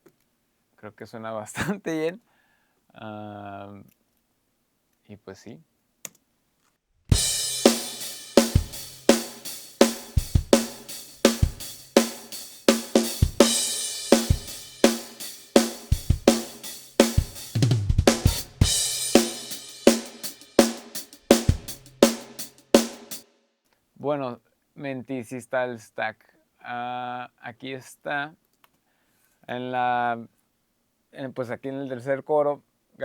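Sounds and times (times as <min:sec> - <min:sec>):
drum kit beat: 0:07.1 - 0:23.2.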